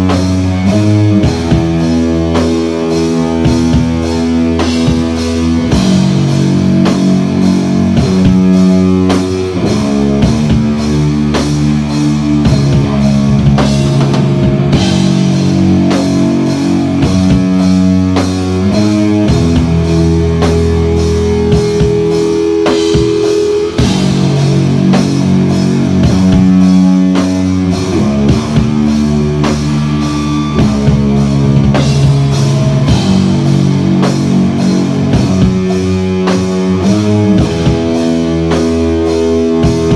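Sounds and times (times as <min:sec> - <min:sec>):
bass guitar: 0:00.0 - 0:39.9
drum kit beat: 0:00.0 - 0:39.9
electric guitars: 0:00.0 - 0:39.9.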